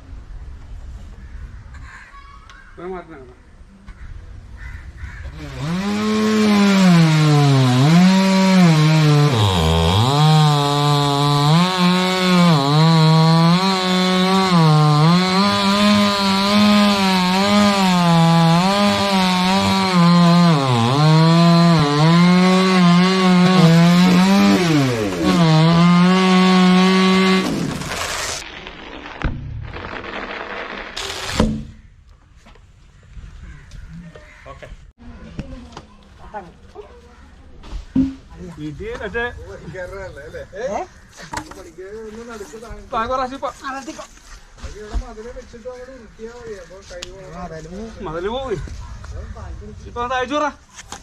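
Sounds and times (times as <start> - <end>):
chainsaw cutting wood: 5.4 - 28.4, 29.8 - 31.7.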